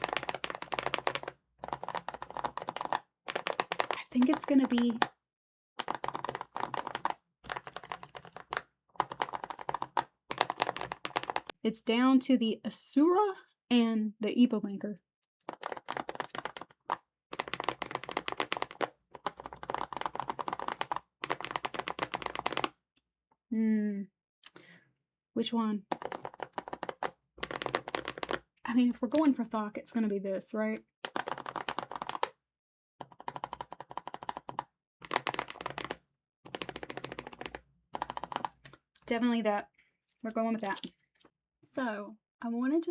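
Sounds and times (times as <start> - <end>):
fast typing on mechanical keyboard: 0.0 - 5.1, 5.8 - 11.6, 15.5 - 22.7, 25.9 - 29.3, 31.0 - 32.4, 33.0 - 38.7.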